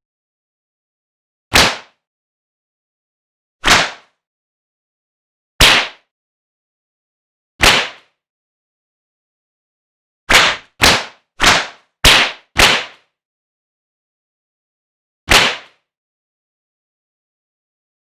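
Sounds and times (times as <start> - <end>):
cartoon punch whack: 1.5 - 2.0, 3.6 - 4.1, 5.6 - 6.0, 7.6 - 8.1, 10.3 - 13.0, 15.3 - 15.8.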